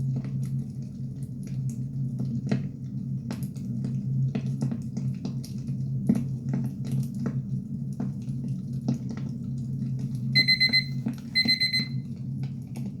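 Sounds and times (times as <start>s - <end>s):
digital timer alarm beeps: 10.4s - 12.0s.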